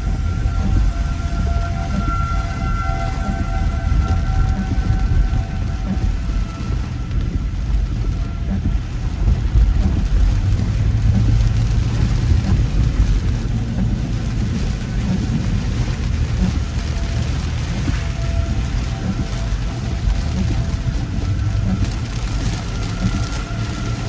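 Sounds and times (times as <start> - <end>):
heavy rain on a car: 0.0 - 24.0
road and wind noise rumble: 0.0 - 24.0.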